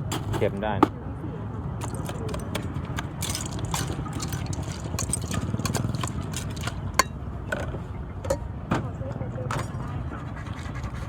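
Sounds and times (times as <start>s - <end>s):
utensils knocking against bowl: 1.8s - 7.2s.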